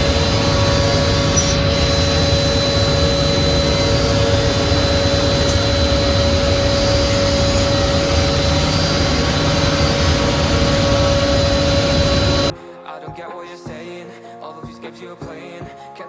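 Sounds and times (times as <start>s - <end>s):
loud machine hum: 0.0s - 12.5s
spindle motors whining: 0.0s - 12.5s.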